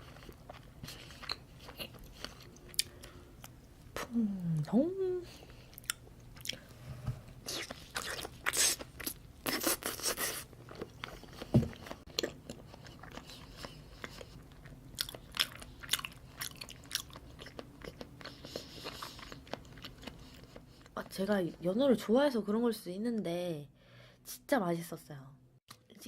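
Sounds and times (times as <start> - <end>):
close chewing and biting: 0.0 - 4.1, 5.5 - 6.6, 7.4 - 21.0.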